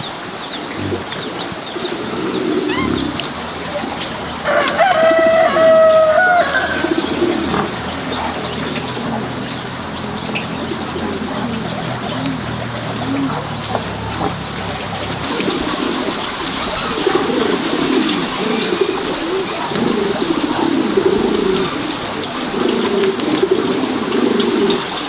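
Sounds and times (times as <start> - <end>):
rooster crowing: 4.4 - 7.6.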